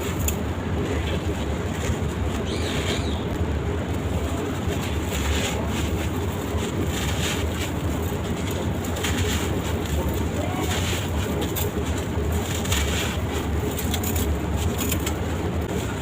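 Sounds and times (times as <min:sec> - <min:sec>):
steady low rumble: 0:00.0 - 0:16.0
sand-cement crumbling and crunching: 0:03.9 - 0:16.0.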